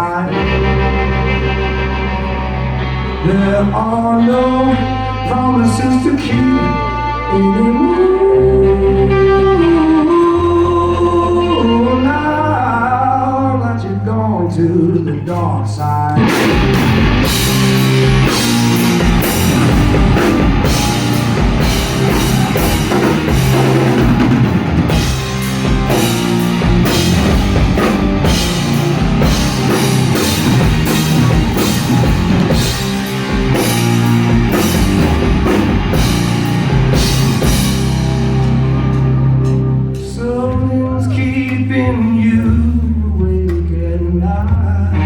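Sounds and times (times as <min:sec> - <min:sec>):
distorted electric guitar: 0:00.0 - 0:13.8, 0:16.0 - 0:42.8, 0:44.4 - 0:45.0
bass guitar: 0:00.0 - 0:45.0
drum kit playing: 0:16.2 - 0:43.0.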